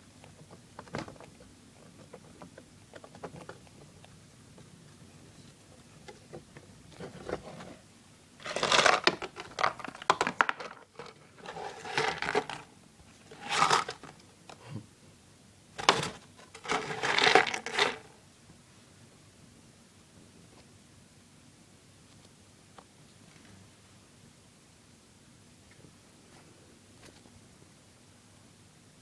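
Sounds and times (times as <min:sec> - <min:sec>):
rats scratching and clicking: 0:00.2 - 0:04.7.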